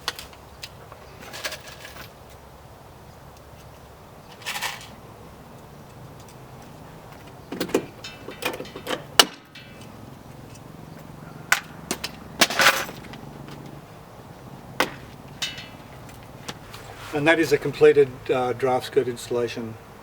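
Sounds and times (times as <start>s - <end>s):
clicks and knocks: 7.2s - 10.6s, 14.8s - 16.6s
rustling: 12.0s - 17.7s.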